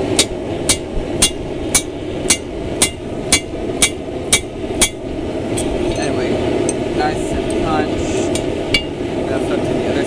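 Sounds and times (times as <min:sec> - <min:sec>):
steady rushing noise: 0:00.0 - 0:10.0
hammer striking metal: 0:00.2 - 0:05.0, 0:08.4 - 0:09.0.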